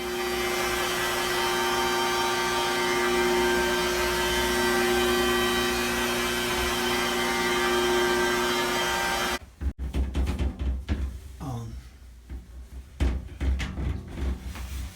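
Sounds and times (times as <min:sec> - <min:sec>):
glass polisher motor whine: 0:00.0 - 0:09.4.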